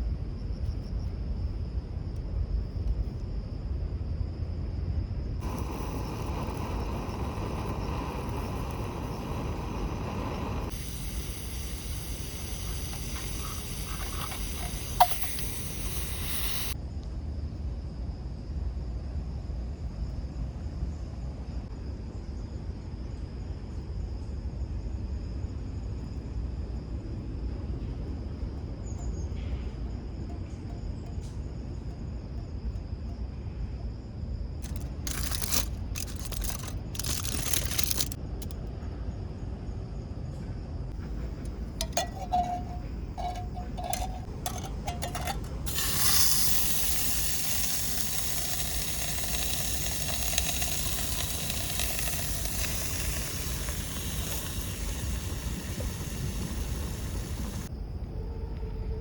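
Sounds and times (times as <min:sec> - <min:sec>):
steady hiss: 0:05.4 - 0:16.8, 0:34.6 - 0:38.6, 0:41.0 - 0:58.7
rustling: 0:34.6 - 0:38.2.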